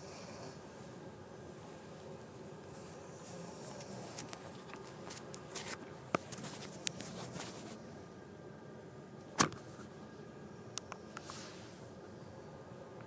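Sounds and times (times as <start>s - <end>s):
faint rustling: 1.7s - 7.8s.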